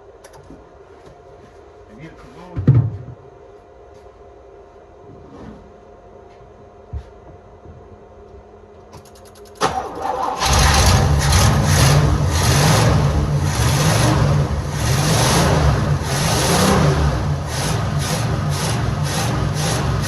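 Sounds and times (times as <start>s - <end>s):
car engine running unevenly: 10.4s - 20.0s.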